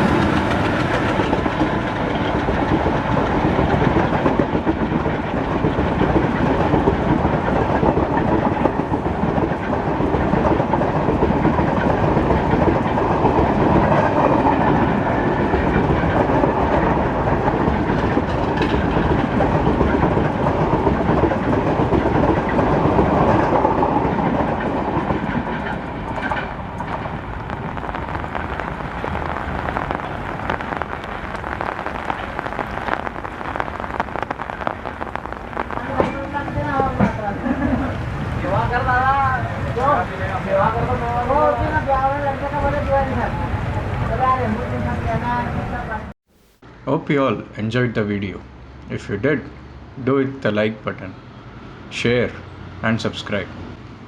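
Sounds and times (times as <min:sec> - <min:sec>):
train wheels clattering on rails: 0:00.0 - 0:30.8, 0:35.7 - 0:44.2
steady rainfall: 0:00.0 - 0:46.6.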